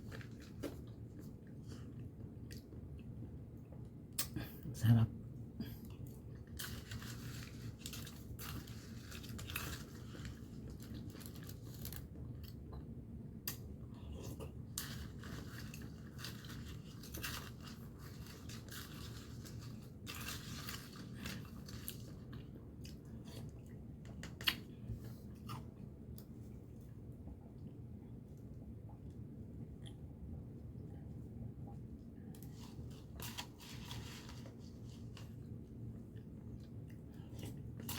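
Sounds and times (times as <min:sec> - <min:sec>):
person chewing and crunching ice: 0:05.9 - 0:12.9, 0:13.5 - 0:25.8.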